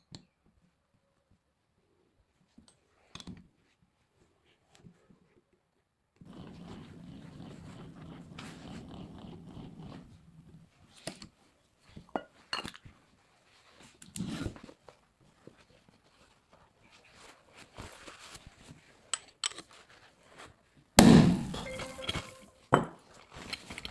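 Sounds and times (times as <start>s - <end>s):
loud bang: 21.0s - 21.8s.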